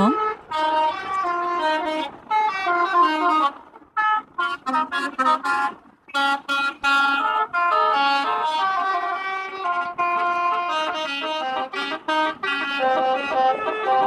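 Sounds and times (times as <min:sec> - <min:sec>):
musical car horn melody: 0:00.0 - 0:14.0.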